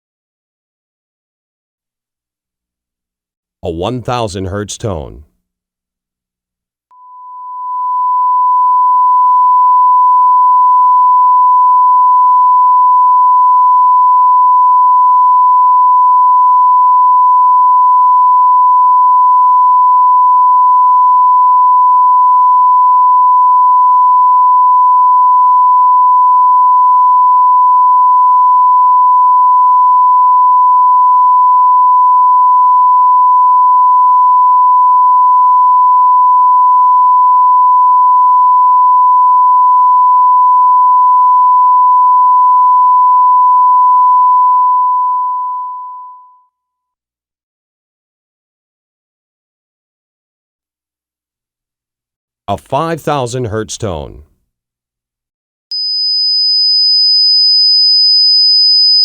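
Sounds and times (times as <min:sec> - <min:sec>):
sine test tone: 0:06.9 - 0:46.8, 0:55.7 - 0:59.0.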